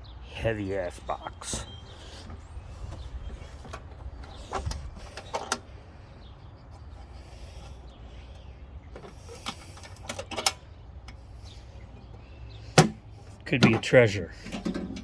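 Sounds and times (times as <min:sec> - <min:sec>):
metal toolbox clicks and clanks: 0:03.7 - 0:05.7, 0:09.4 - 0:10.6, 0:12.8 - 0:15.0.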